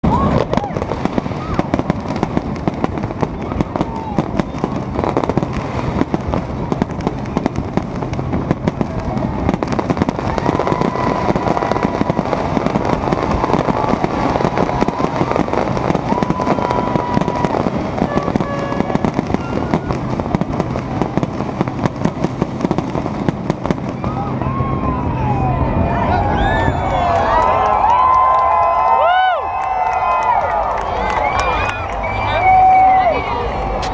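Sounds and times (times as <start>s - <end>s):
fireworks bangs and crackling: 0.0s - 33.9s.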